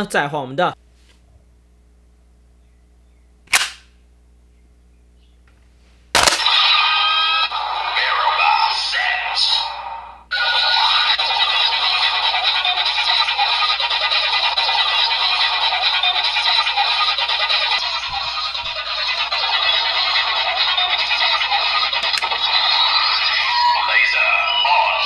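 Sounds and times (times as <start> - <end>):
click: 22.0 - 22.4.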